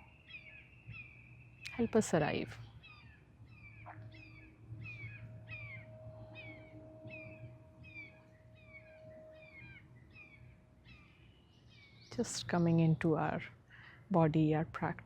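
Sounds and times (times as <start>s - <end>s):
faint steady hum: 0.0s - 15.0s
faint bird calls: 2.7s - 12.2s.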